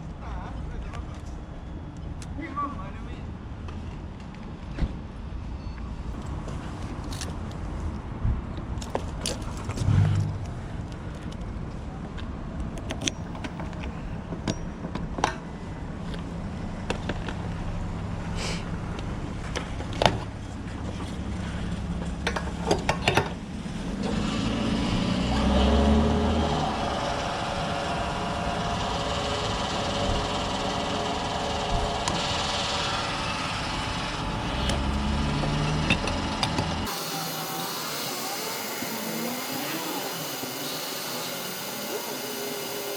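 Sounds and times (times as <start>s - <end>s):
sharp clicks and knocks: 34.6s - 36.9s.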